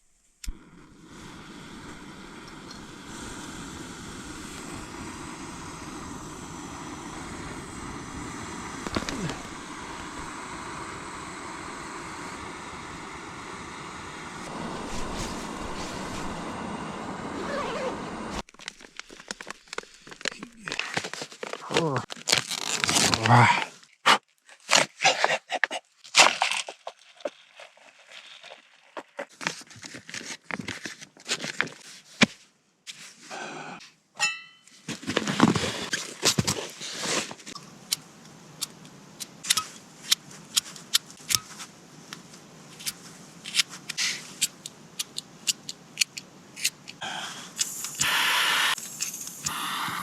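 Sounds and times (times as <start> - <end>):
packaging rustling and crinkling: 8.8 - 9.6, 14.5 - 16.4, 18.4 - 25.0, 26.1 - 32.4, 34.9 - 37.6
small clicks and crackles: 8.8 - 10.3, 18.4 - 23.3, 35.1 - 48.1.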